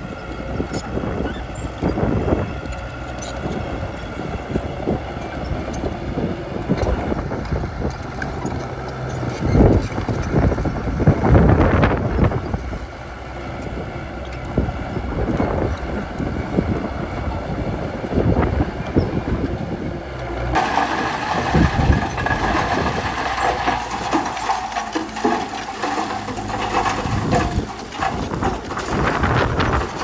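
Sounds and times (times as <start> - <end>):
tracks and blade clanking: 0.0 - 16.3, 18.0 - 30.0
bulldozer diesel engine under load: 0.0 - 30.0.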